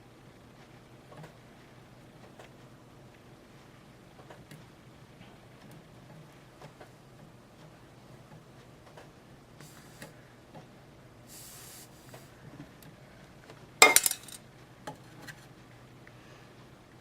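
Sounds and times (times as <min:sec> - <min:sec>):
short hiss: 0:09.6 - 0:10.2, 0:11.3 - 0:12.3
sharp metallic clatter: 0:13.8 - 0:14.4.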